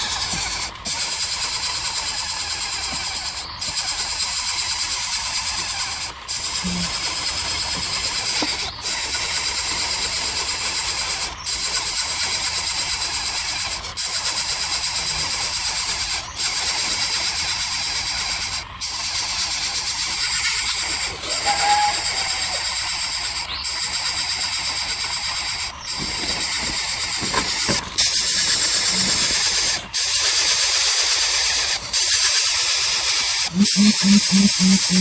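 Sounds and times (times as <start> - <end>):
loud high-pitched buzzing: 0.0 - 35.0
short call: 33.5 - 35.0.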